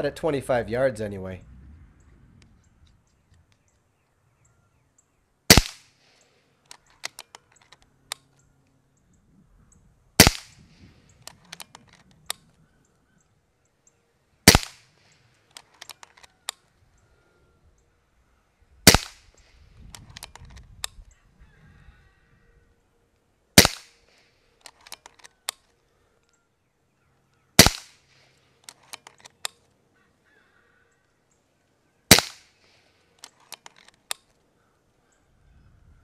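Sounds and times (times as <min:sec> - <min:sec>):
air rifle shot cracking: 0:05.5 - 0:06.0, 0:10.2 - 0:10.9, 0:14.4 - 0:15.0, 0:18.8 - 0:19.4, 0:23.6 - 0:24.2, 0:27.6 - 0:28.3, 0:32.1 - 0:32.8
rifle action clicks: 0:05.5 - 0:08.5, 0:11.2 - 0:12.6, 0:14.5 - 0:16.7, 0:18.9 - 0:21.1, 0:23.6 - 0:26.4, 0:27.6 - 0:29.8, 0:32.1 - 0:34.4.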